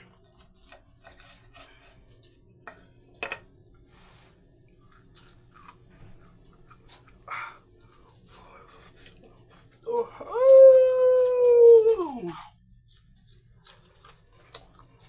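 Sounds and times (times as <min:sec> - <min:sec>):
crispy food crunching: 0:04.6 - 0:09.2, 0:12.6 - 0:15.0.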